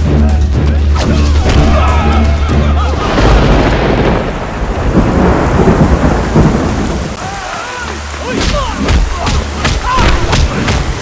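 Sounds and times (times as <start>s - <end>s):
background music with deep bass: 0.0s - 3.7s
heavy rain: 0.0s - 11.0s
thunder rumbling: 1.5s - 11.0s.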